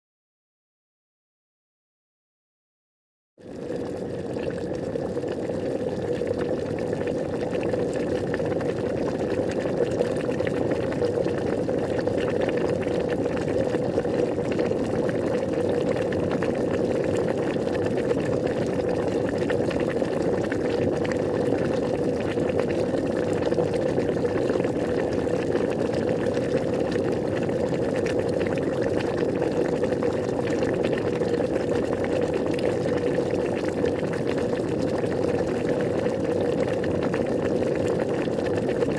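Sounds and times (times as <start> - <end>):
water boiling: 3.4 - 38.9.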